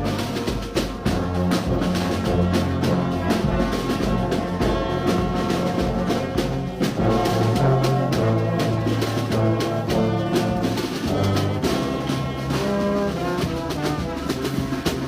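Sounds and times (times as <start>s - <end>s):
brass band playing: 0.0s - 15.0s
drum beats: 0.0s - 15.0s.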